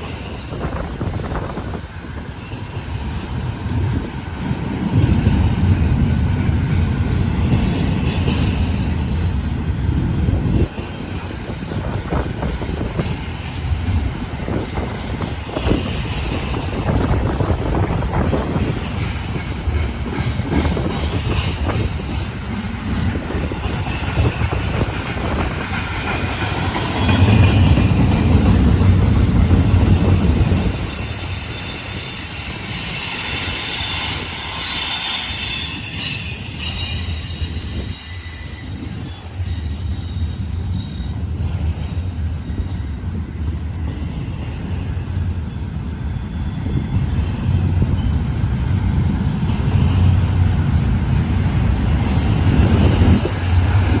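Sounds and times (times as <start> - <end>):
freight train wheels rumbling: 0.0 - 54.0
steel wheel squeal: 28.7 - 43.2, 45.6 - 54.0.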